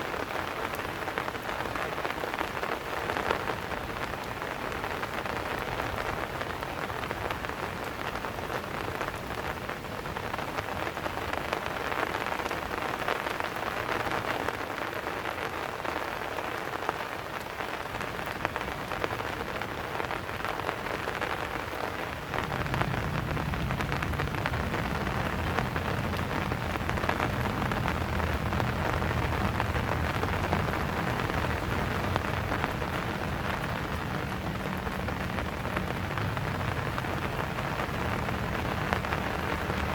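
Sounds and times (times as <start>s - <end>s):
steady rain falling: 0.0s - 39.9s
low rumble: 22.4s - 33.4s.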